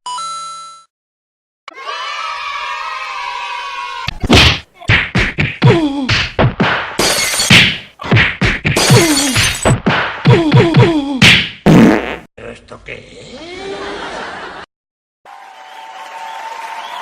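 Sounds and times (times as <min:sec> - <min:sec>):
comedic whacks and thuds: 0:04.1 - 0:11.9.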